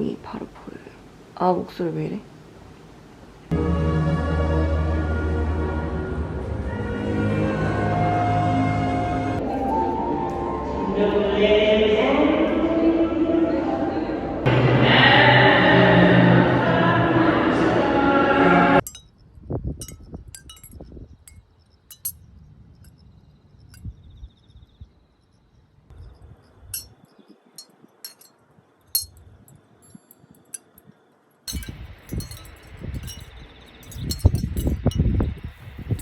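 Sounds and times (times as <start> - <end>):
background music: 3.5 - 18.8
light clinks and tinkles: 18.8 - 22.2, 26.4 - 36.0.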